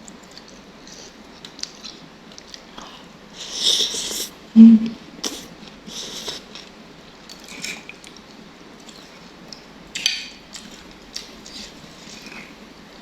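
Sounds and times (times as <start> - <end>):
wet chewing and slurping: 0.2 - 4.4, 5.2 - 6.7.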